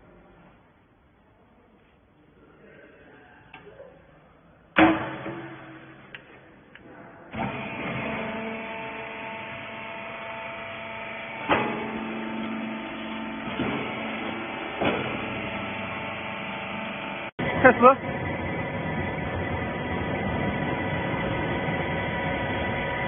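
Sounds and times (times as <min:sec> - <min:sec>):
loud metallic clank: 0:04.8 - 0:06.3
machine humming: 0:04.8 - 0:23.0.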